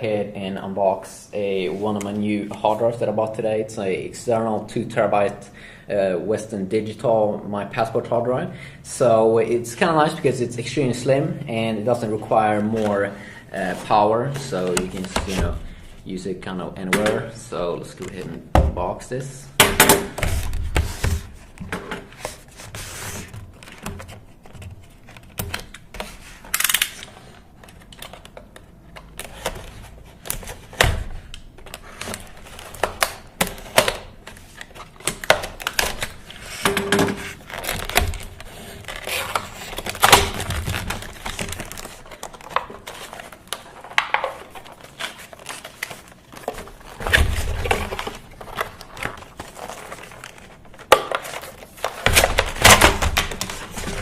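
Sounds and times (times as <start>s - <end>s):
packaging clicks and crinkling: 23.4s - 54.0s
packaging tearing: 37.3s - 54.0s.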